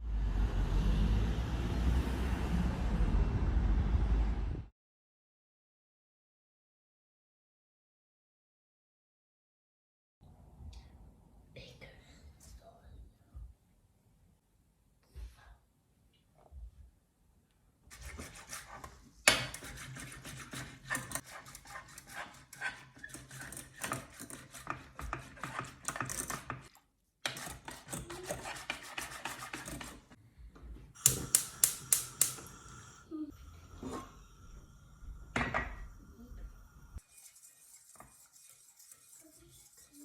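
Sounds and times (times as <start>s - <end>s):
utensil scraping a bowl: 17.9s - 30.2s, 37.0s - 40.0s.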